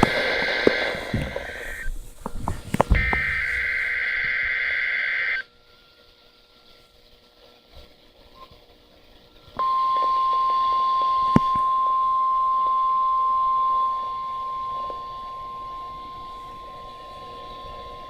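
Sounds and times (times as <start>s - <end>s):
high steady alarm beep: 0.0s - 1.9s, 2.9s - 5.4s, 9.6s - 18.0s.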